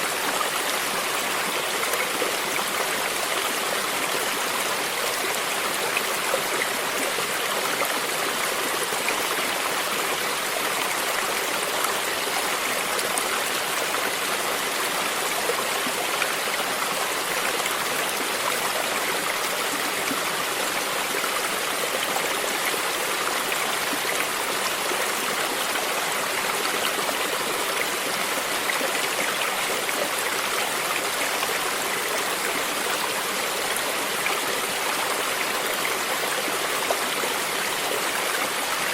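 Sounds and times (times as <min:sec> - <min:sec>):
small waterfall: 0:00.0 - 0:38.9
stream flowing over rocks: 0:00.0 - 0:38.9.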